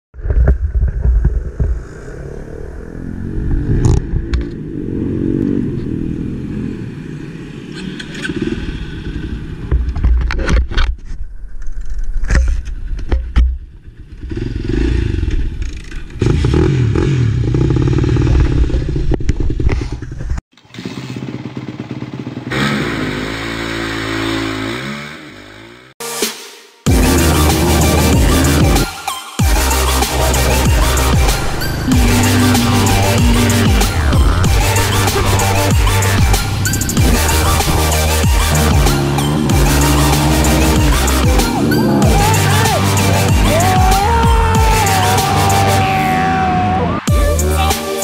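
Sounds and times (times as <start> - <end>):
motorcycle engine revving: 1.4 - 10.0, 13.9 - 26.0, 26.9 - 47.6.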